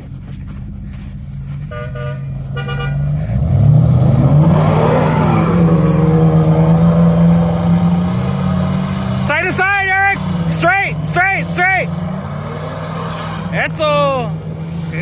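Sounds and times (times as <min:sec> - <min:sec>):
car horn toots: 0:01.6 - 0:03.2
engine revving under load: 0:02.3 - 0:15.0.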